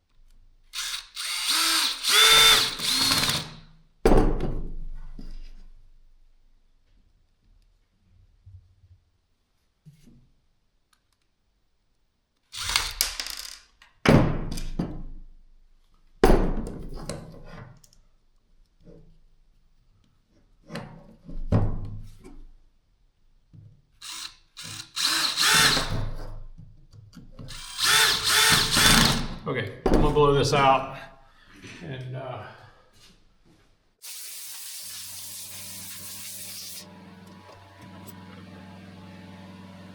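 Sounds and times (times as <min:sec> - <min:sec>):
cordless drill bursts: 0:00.8 - 0:03.6, 0:12.6 - 0:13.1, 0:24.0 - 0:26.2, 0:27.5 - 0:29.4, 0:34.0 - 0:39.9.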